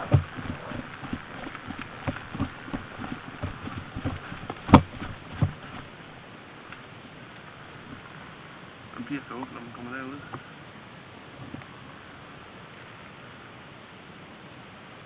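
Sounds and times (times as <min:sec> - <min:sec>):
footsteps: 0:00.0 - 0:05.9.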